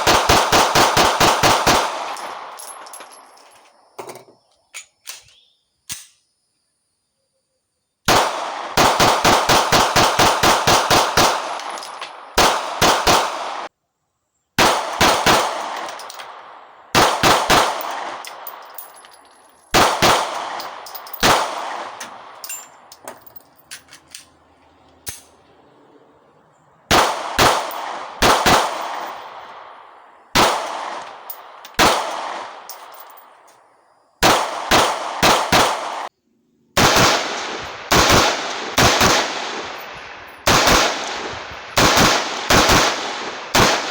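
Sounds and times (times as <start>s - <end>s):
gunshots with echo: 0.0s - 2.6s, 8.1s - 13.7s, 14.6s - 18.7s, 19.7s - 22.4s, 26.9s - 32.9s, 34.2s - 36.1s, 36.8s - 43.9s.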